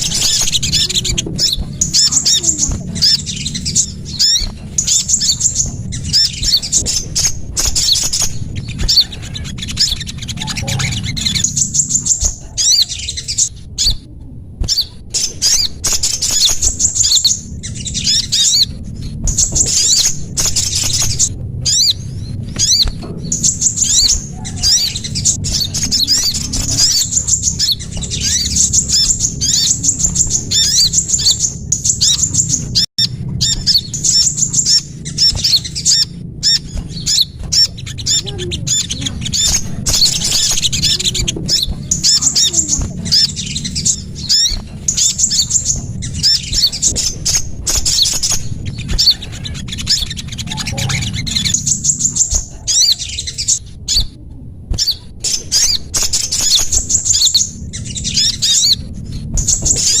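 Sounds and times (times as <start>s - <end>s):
songbirds chirping and trilling: 0.0s - 60.0s
steady low hum: 0.0s - 60.0s.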